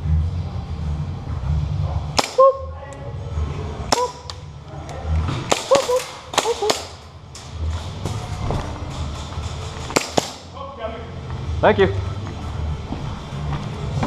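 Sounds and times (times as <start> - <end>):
airsoft gun shots: 2.2 - 2.5, 3.9 - 4.3, 5.5 - 7.0, 9.9 - 10.5.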